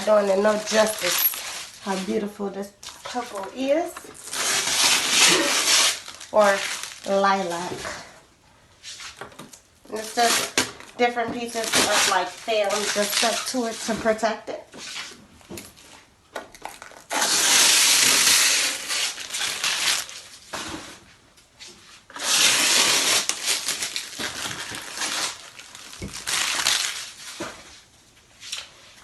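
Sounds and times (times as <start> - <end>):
plastic film rustling: 0.0 - 8.2, 8.9 - 21.3, 22.0 - 29.0.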